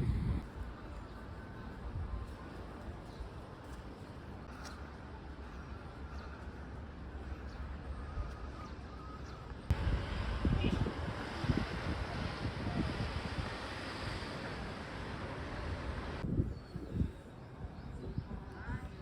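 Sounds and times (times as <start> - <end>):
wind buffeting microphone: 0.0 - 0.8, 9.7 - 19.0.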